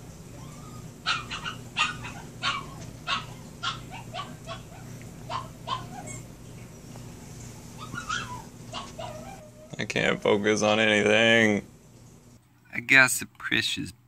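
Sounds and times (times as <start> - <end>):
puppy whining and yelping: 0.3 - 6.4, 7.7 - 9.8.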